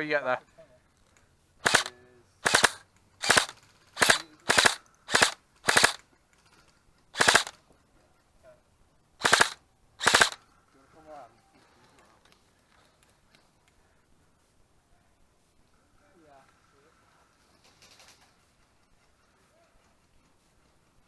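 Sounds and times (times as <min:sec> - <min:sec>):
airsoft rifle bursts: 0:01.6 - 0:06.1, 0:07.1 - 0:07.6, 0:09.2 - 0:10.4.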